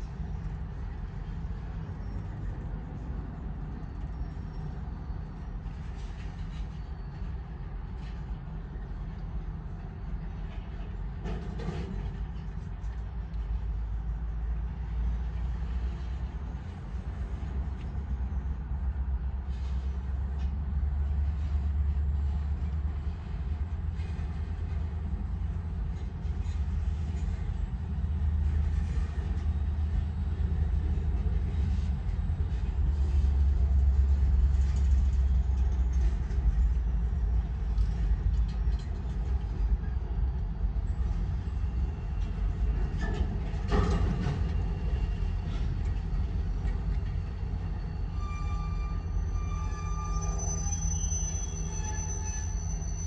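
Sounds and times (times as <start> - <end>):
locomotive engine rumble: 0.0 - 53.0
short knocks of rail cars: 10.3 - 13.1, 41.7 - 47.5.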